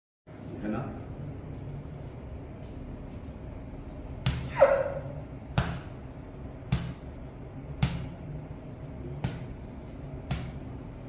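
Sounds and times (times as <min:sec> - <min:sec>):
sharp slaps: 0:04.2 - 0:04.7, 0:05.4 - 0:08.3, 0:09.2 - 0:10.9.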